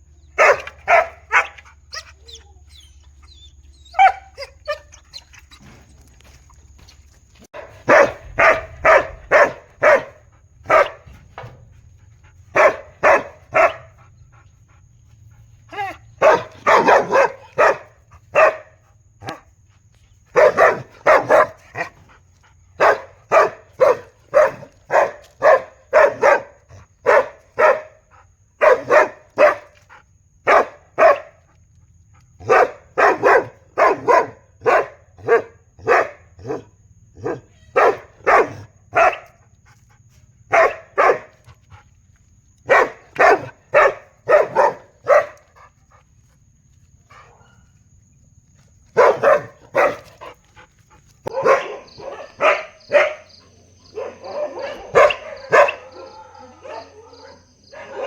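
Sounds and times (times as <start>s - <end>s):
big dog barking: 0.3s - 2.2s, 3.9s - 5.0s, 7.5s - 14.3s, 15.6s - 19.5s, 20.3s - 29.8s, 30.4s - 31.5s, 32.3s - 39.4s, 40.4s - 41.8s, 42.6s - 45.8s, 48.9s - 58.0s.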